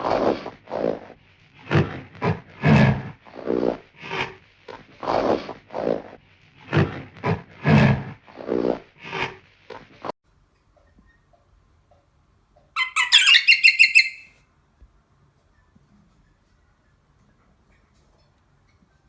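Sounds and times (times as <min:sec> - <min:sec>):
high-pitched rapid animal trill: 0:12.8 - 0:14.3
rough low animal calls: 0:12.8 - 0:14.3.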